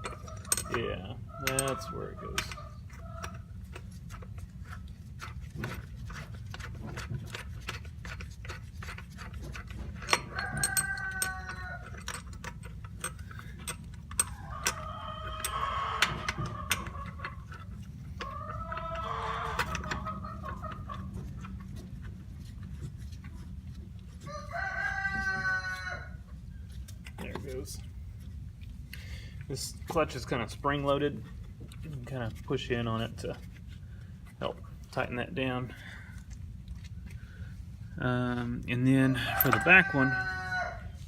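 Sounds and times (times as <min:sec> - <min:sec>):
rooster crowing: 0:10.3 - 0:11.9, 0:24.2 - 0:26.2, 0:39.1 - 0:41.0.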